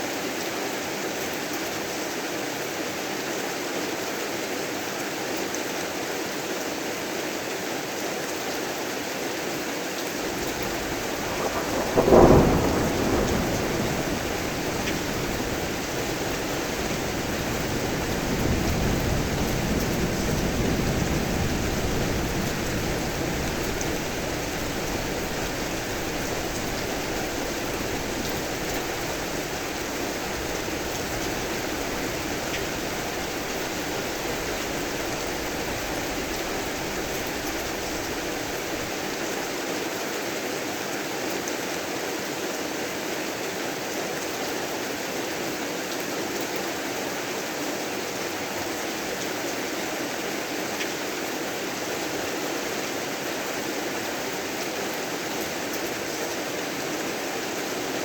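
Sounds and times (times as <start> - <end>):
heavy rain hissing: 10.1 - 39.7
low thunder rumble: 10.2 - 39.2.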